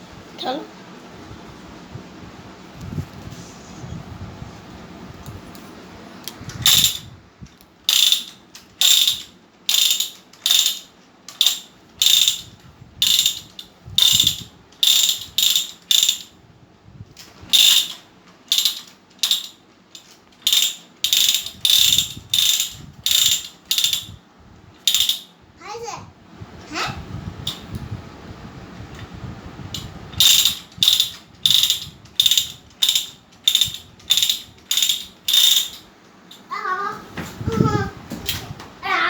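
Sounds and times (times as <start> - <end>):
toy gun ratcheting buzzes: 6.6 - 7.0, 7.9 - 16.3, 17.5 - 24.2, 24.8 - 25.3, 30.2 - 35.8.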